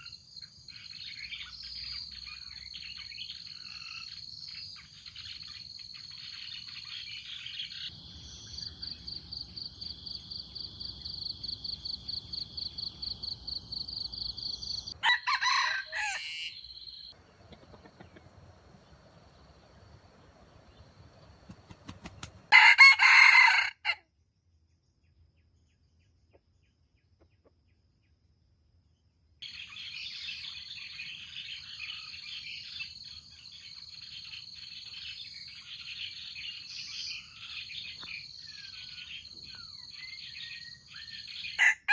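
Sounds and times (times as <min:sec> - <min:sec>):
chorus of birds and insects: 0:00.0 - 0:41.9
rooster crowing: 0:15.0 - 0:16.8, 0:22.5 - 0:24.0, 0:41.5 - 0:41.9.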